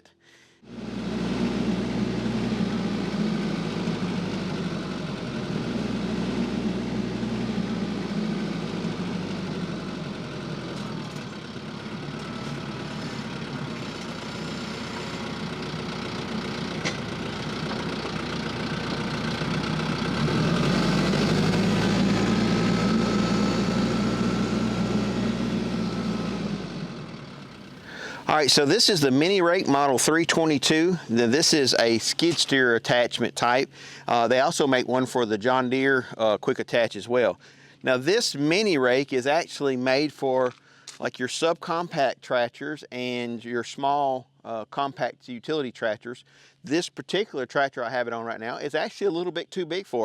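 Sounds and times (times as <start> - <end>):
tractor engine running: 0.6 - 34.6.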